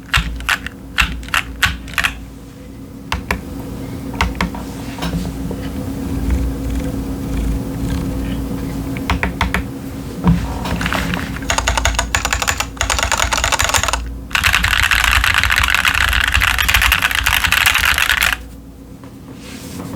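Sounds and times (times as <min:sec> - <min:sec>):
typing on mechanical keyboard: 0:00.0 - 0:02.2, 0:10.8 - 0:18.4.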